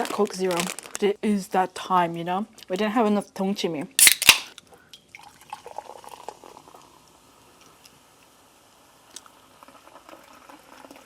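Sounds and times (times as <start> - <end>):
soda fizzing crackle: 5.1 - 11.0.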